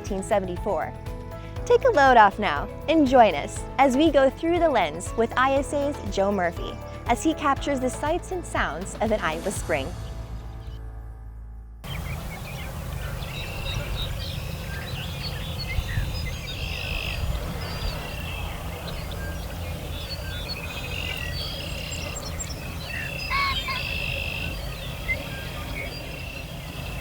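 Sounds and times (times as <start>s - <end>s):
low outdoor rumble: 11.8s - 27.0s
songbirds singing and calling: 11.9s - 27.0s.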